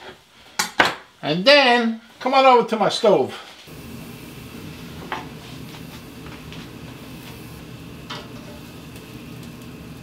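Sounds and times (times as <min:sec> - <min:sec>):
steady low hum: 0:03.7 - 0:10.0.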